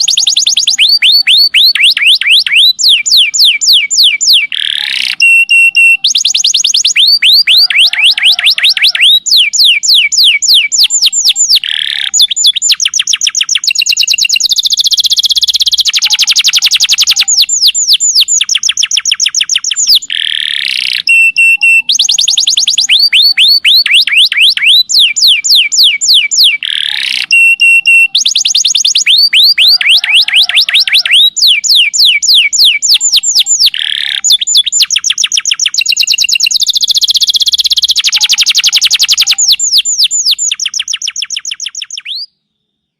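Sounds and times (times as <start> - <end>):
canary singing trills: 0.0 - 42.4.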